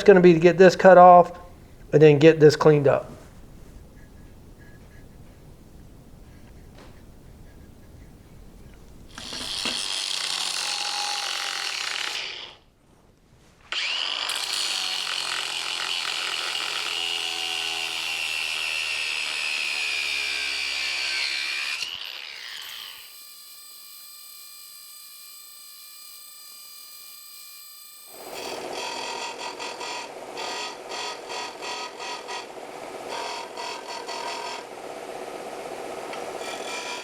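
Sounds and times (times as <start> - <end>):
power tool cutting steel: 9.1 - 12.6, 13.7 - 37.0.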